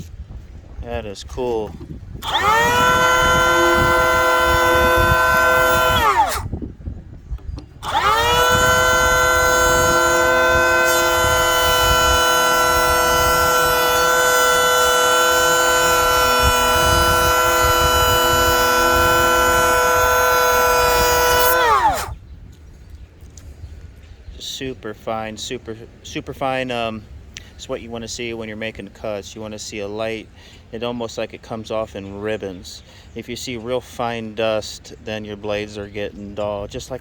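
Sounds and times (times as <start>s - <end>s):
electric hand planer whining: 2.2s - 6.5s, 7.5s - 22.2s.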